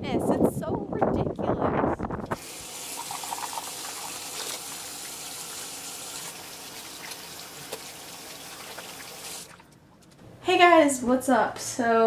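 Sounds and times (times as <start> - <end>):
water running from a tap: 2.3 - 9.6.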